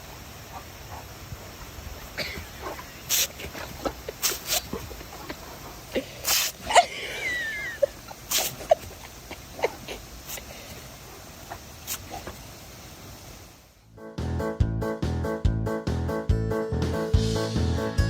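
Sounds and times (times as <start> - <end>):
animal sneezing: 2.0 - 12.6.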